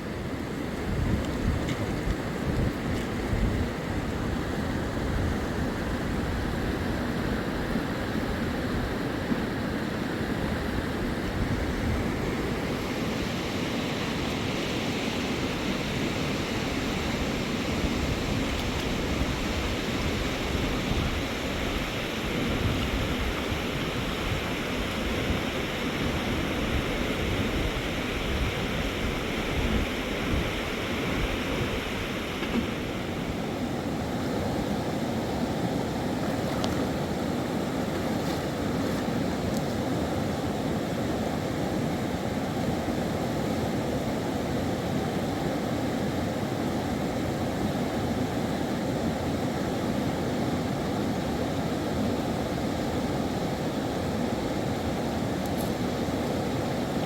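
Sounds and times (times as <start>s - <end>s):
flowing river water: 0.0s - 57.0s
wind buffeting microphone: 0.5s - 9.6s.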